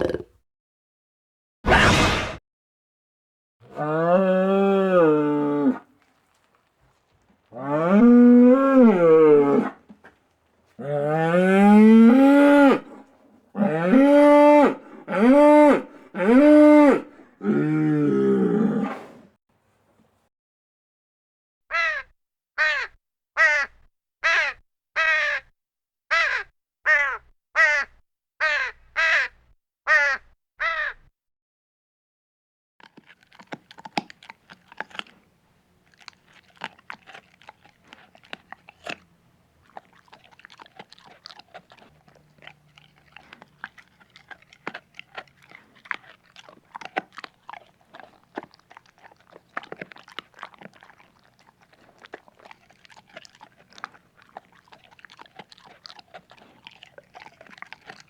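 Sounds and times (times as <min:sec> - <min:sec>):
crunching and clicking: 0:05.9 - 0:08.2, 0:09.7 - 0:10.8, 0:32.8 - 0:58.0
crow cawing: 0:21.7 - 0:25.4, 0:26.1 - 0:29.3, 0:29.9 - 0:31.0.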